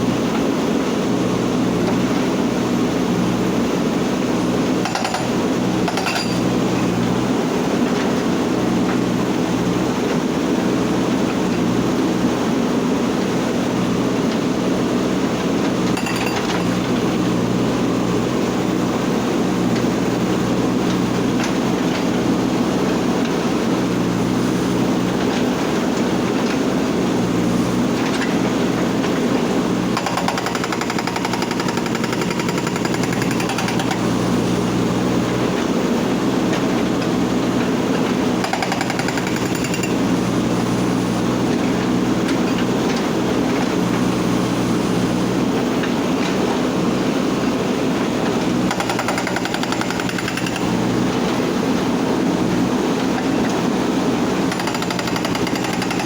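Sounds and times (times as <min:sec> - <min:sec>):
diesel engine running: 0:00.0 - 0:56.0
hydraulic breaker hammering stone: 0:04.7 - 0:06.7, 0:15.7 - 0:17.3, 0:28.2 - 0:34.2, 0:37.9 - 0:40.2, 0:48.4 - 0:51.2, 0:53.2 - 0:56.0.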